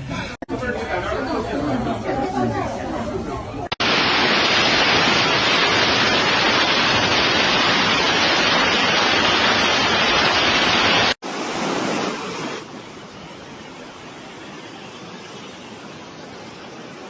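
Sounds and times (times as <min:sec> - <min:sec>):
floodwater rushing: 0:03.7 - 0:17.0.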